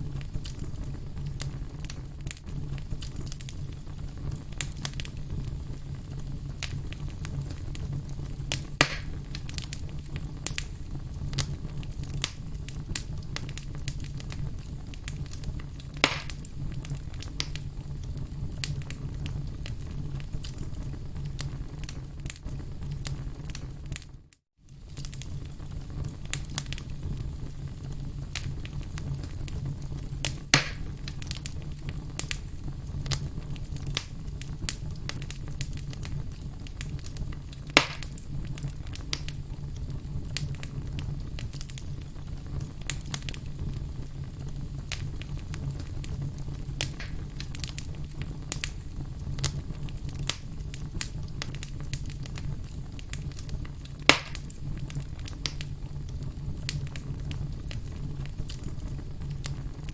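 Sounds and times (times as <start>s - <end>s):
firewood burning with low rumble: 0.0s - 59.9s
loud fire pops: 0.0s - 59.9s
small fire crackles: 0.0s - 59.9s.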